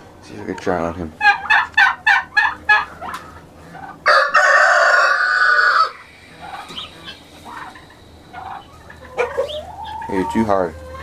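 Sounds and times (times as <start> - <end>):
turkey gobbling: 1.1 - 11.0
rooster crowing: 4.0 - 10.0
soft clucking: 5.7 - 11.0.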